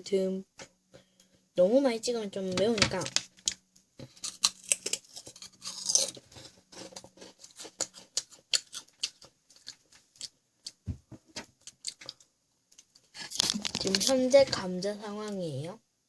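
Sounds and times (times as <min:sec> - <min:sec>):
potato snack crunching: 0:03.4 - 0:10.8.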